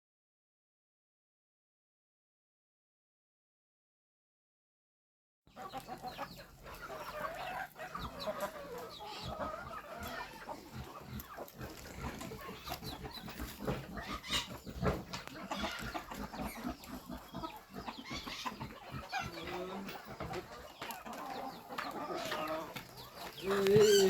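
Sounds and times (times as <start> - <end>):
chickens clucking: 5.5 - 24.0.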